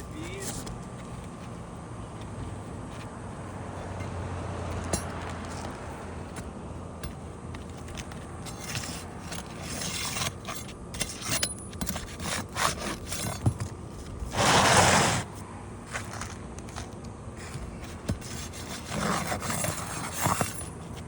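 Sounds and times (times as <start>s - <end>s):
shingles clicking and scraping: 4.9s - 15.3s, 15.9s - 21.0s
loud rasping scrape: 8.5s - 13.5s, 14.3s - 15.3s, 17.4s - 20.7s.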